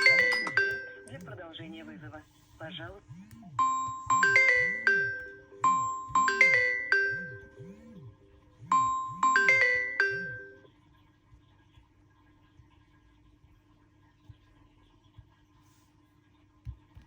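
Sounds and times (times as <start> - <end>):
phone ringtone chime: 0.0 - 1.1, 3.6 - 7.6, 8.7 - 10.6.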